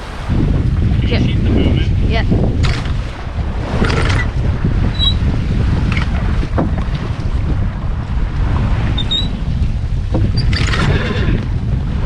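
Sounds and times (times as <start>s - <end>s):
sea washing: 0.0s - 12.0s
wind buffeting microphone: 0.0s - 12.0s
faint squeak: 5.0s - 5.2s, 9.0s - 9.4s.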